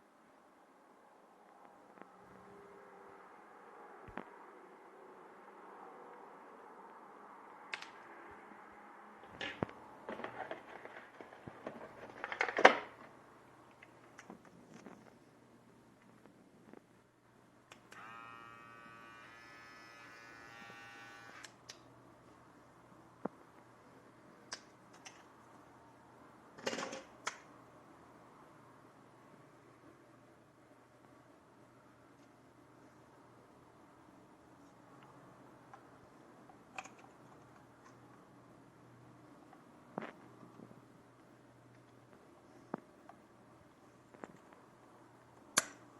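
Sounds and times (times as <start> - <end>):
faint steady hum: 0.0 - 45.9
hair clipper clicks: 17.7 - 21.6.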